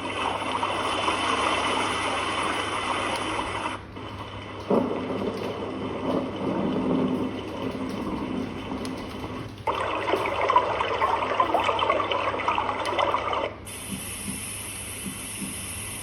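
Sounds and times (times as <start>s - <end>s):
running bubbling water: 0.0s - 16.0s
steady high-edged hiss: 13.6s - 16.0s.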